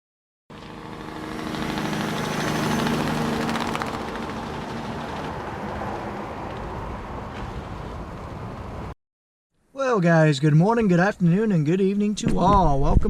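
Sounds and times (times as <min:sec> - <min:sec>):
engine running: 0:00.5 - 0:08.9.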